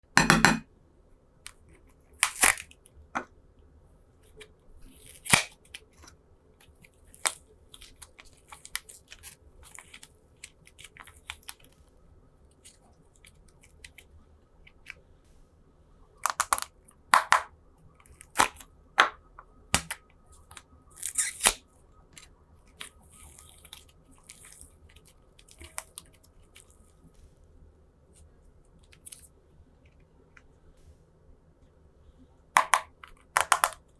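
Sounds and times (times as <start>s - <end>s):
slime squishing and popping: 2.2s - 2.7s, 5.0s - 5.7s, 16.2s - 17.5s, 18.1s - 21.6s, 32.6s - 33.8s.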